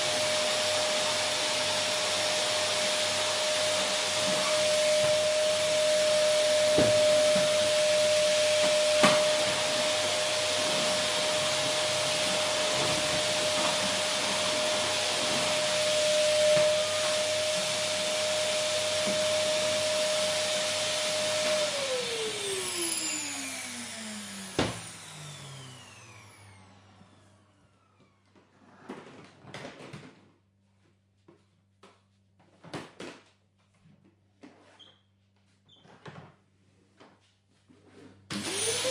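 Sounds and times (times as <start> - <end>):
vacuum cleaner running: 0.0 - 28.6, 38.2 - 38.9.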